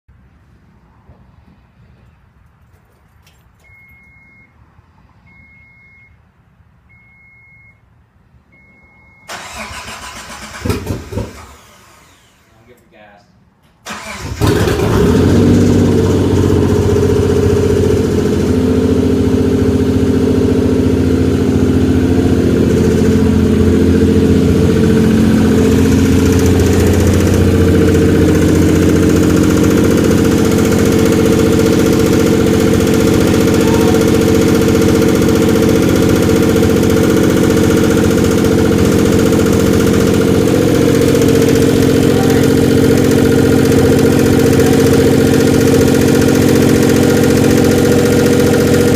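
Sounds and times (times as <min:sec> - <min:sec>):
car engine starting and idling: 0:08.5 - 0:12.9, 0:13.6 - 0:48.9
engine lifter ticking: 0:24.5 - 0:48.9.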